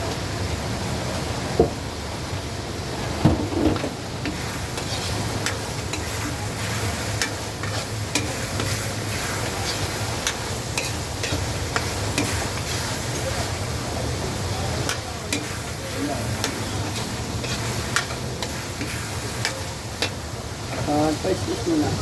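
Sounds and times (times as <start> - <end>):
food sizzling in a pan: 3.0 - 22.0
metal utensil scraping a pan: 4.3 - 12.8, 14.8 - 20.8.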